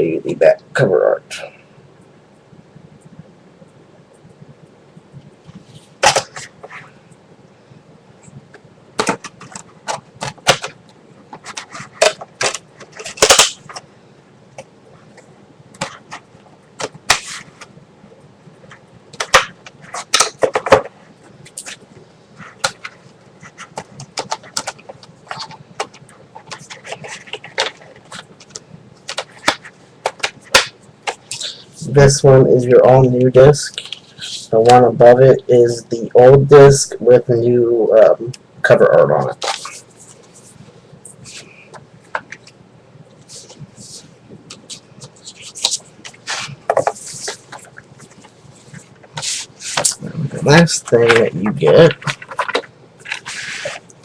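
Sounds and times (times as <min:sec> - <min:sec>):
plastic case clicking and knocking: 0:51.8 - 0:53.2.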